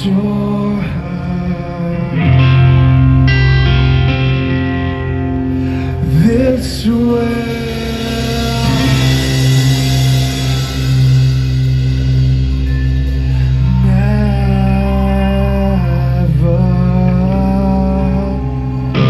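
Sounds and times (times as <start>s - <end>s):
man singing: 0.0s - 3.1s, 5.8s - 10.7s, 13.3s - 19.0s
metalcore band playing loudly: 1.6s - 19.0s.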